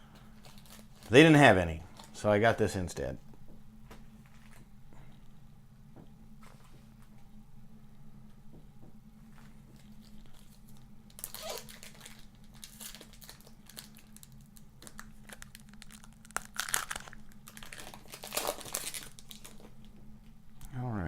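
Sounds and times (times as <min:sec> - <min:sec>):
card wrappers crinkling and tearing: 0:00.2 - 0:02.2, 0:09.8 - 0:19.8.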